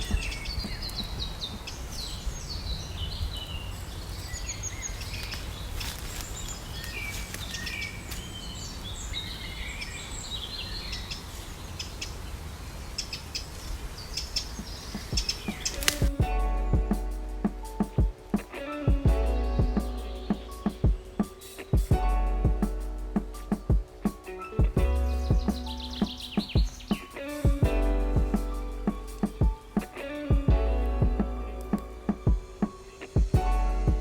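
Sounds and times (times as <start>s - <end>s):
music: 0.0s - 1.0s, 15.4s - 34.0s
songbirds chirping and trilling: 0.0s - 22.0s, 23.0s - 33.4s.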